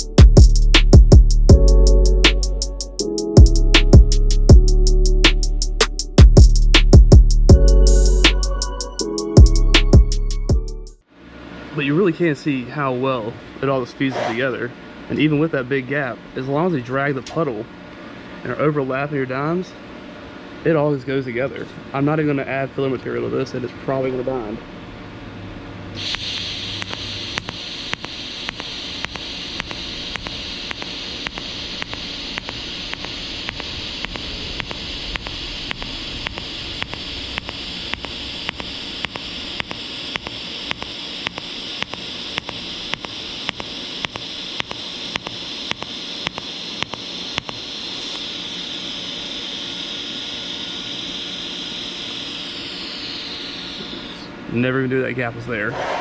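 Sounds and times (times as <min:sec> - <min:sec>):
pulser clicking: 0:26.0 - 0:48.3
welding arc hissing: 0:26.0 - 0:54.3.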